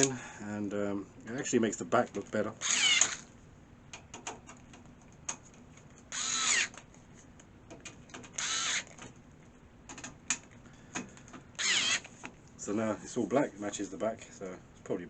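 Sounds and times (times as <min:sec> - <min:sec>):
cordless screwdriver running: 0:02.6 - 0:03.3, 0:06.1 - 0:06.8, 0:08.4 - 0:09.0, 0:11.6 - 0:12.2.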